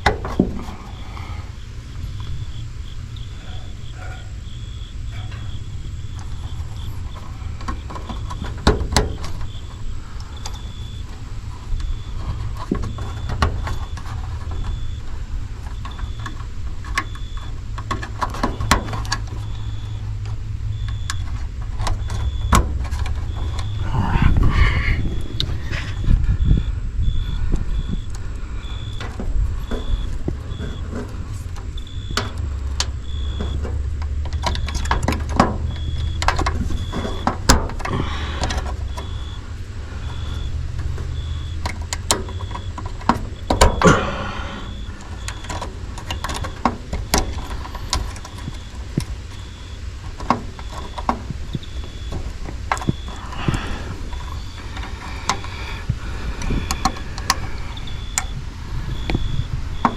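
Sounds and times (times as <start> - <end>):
steady low rumble: 0.0 - 59.9
faint high beep: 10.3 - 11.1, 20.7 - 21.3, 23.3 - 30.9, 38.9 - 39.4, 40.0 - 41.6, 43.7 - 45.6, 52.8 - 54.8, 57.6 - 59.9
hand tools clicking and tapping: 28.9 - 39.4, 40.0 - 59.9.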